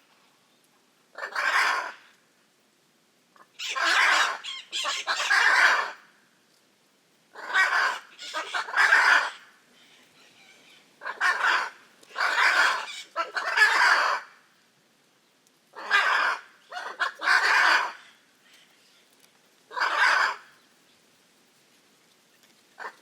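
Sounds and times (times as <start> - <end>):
macaws squawking harshly: 1.2 - 2.1, 3.4 - 6.0, 7.4 - 14.4, 15.8 - 18.6, 19.7 - 20.6.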